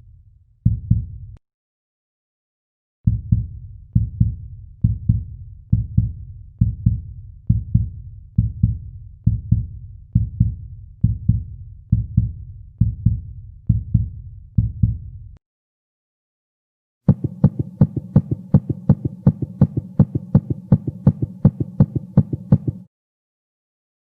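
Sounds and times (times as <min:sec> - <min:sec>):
heartbeat thumps: 0:00.6 - 0:01.2, 0:03.1 - 0:15.1, 0:17.1 - 0:22.9.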